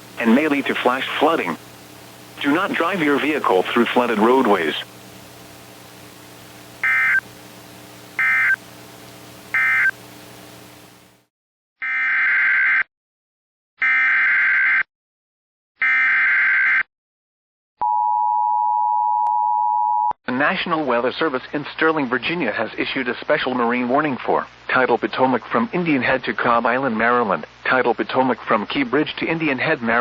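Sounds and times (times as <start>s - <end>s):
radio hiss and hum: 0.0s - 11.2s
data tone bursts: 6.8s - 7.3s, 8.2s - 8.6s, 9.5s - 10.0s.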